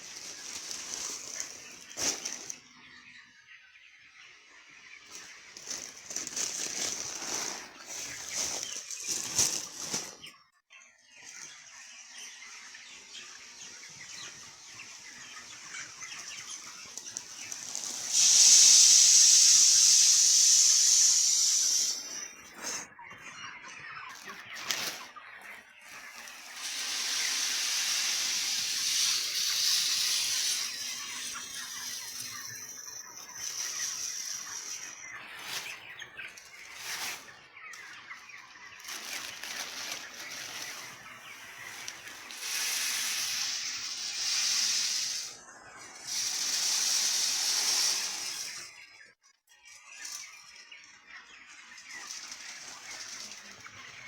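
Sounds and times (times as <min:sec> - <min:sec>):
loud even hiss: 0:17.2 - 0:22.8, 0:26.4 - 0:32.4, 0:42.3 - 0:45.4, 0:46.0 - 0:48.6.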